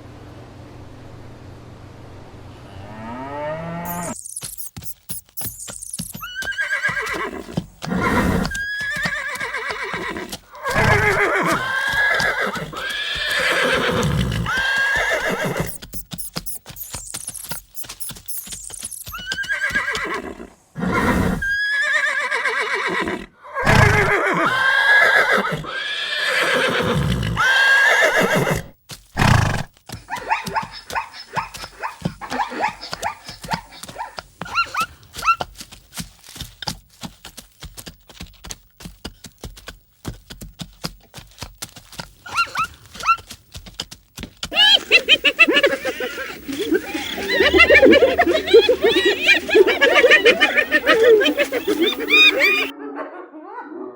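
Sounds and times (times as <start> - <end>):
horses whinnying: 2.8 - 4.2, 5.9 - 35.4, 42.3 - 43.2, 44.5 - 52.7.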